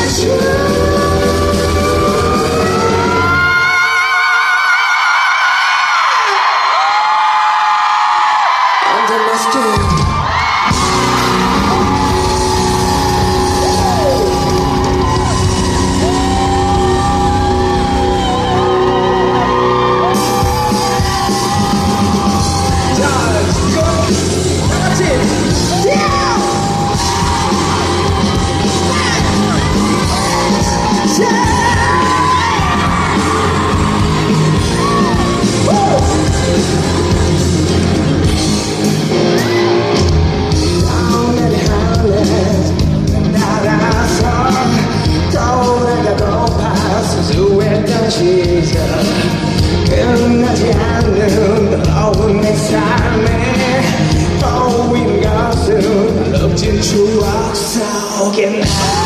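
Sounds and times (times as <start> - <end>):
live rock band playing: 0.0 - 4.1, 9.7 - 59.0
people yelling: 1.6 - 38.3.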